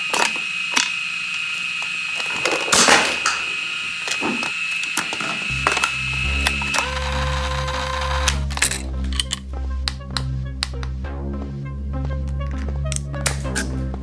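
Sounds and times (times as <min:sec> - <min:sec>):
steady high whine: 0:00.0 - 0:11.0
bass-heavy music: 0:05.5 - 0:14.0.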